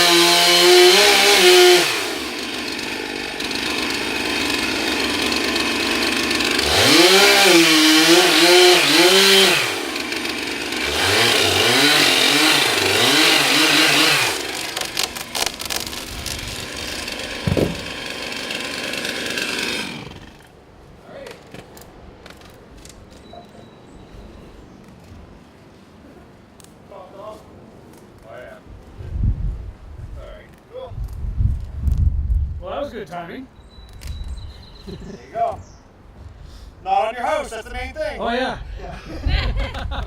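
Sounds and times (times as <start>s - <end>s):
chainsaw revving: 0.0s - 20.5s
wood cracking: 0.0s - 20.5s
heavy thump: 17.4s - 18.0s.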